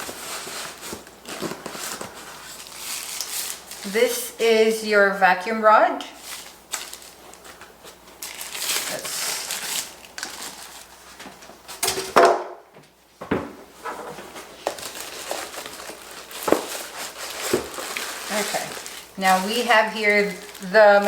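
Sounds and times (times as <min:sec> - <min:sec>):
packaging rustling and crinkling: 0:00.0 - 0:04.0, 0:06.2 - 0:11.9, 0:14.1 - 0:21.0.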